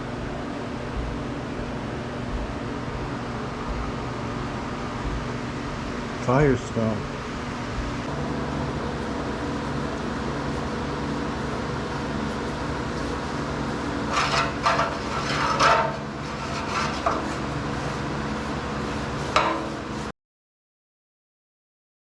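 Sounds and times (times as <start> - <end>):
steady mechanical hum: 0.0 - 20.1
short scrapes and rubs: 10.4 - 20.1.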